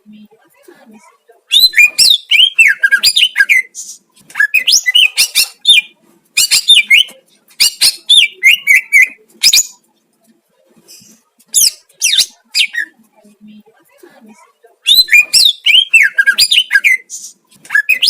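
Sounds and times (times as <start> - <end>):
bird whistling song: 1.5 - 3.7, 4.4 - 9.8, 14.9 - 18.0.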